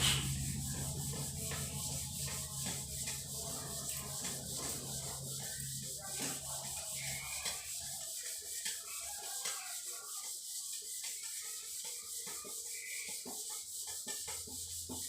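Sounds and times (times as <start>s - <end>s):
hand rubbing and scraping: 0.0s - 15.0s.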